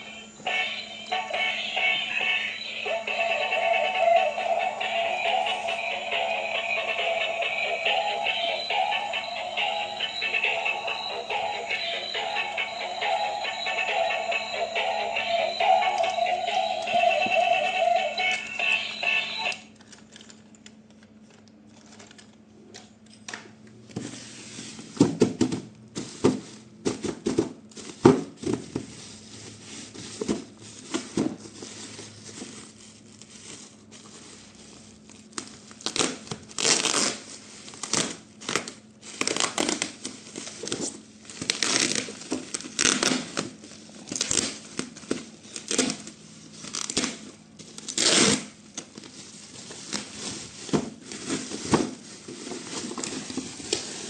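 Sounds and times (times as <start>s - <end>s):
packaging tearing and crinkling: 29.8s - 54.0s.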